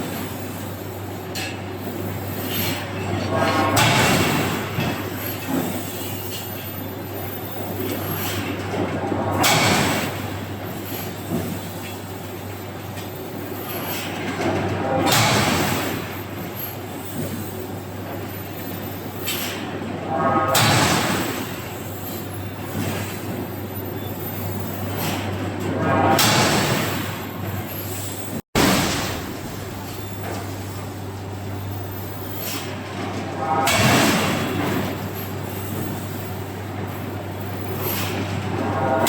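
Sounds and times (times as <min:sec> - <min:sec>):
heavy machinery humming: 0:28.6 - 0:39.0.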